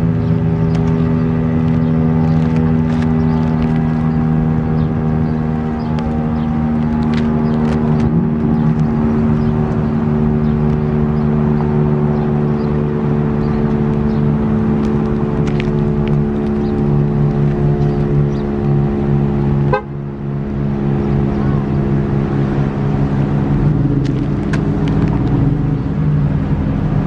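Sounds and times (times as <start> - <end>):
warning siren steady low pitch: 4.1 - 23.6.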